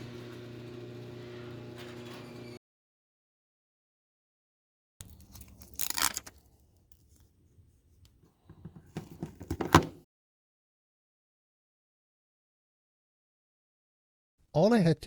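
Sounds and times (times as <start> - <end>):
rustling and scraping handling noise: 5.0 - 10.0.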